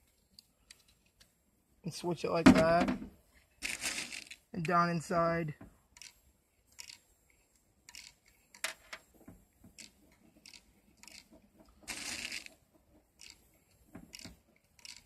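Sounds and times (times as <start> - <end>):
rattle of bbs: 3.6 - 4.5, 7.9 - 15.0.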